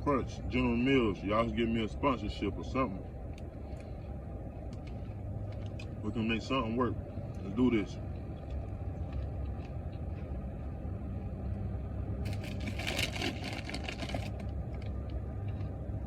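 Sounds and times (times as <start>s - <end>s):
car engine hum: 0.0s - 16.0s
crackling rustle: 12.2s - 15.6s.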